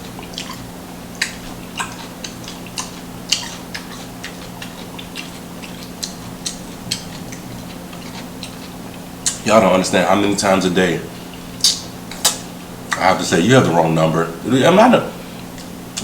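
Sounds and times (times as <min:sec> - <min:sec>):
wet chewing mouth clicks: 0:00.0 - 0:09.5, 0:11.3 - 0:13.0
low electrical hum: 0:00.0 - 0:16.0.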